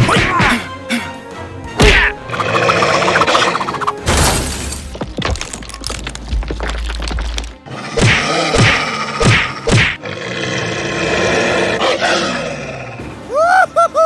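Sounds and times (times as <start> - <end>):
background music: 0.0 - 14.0.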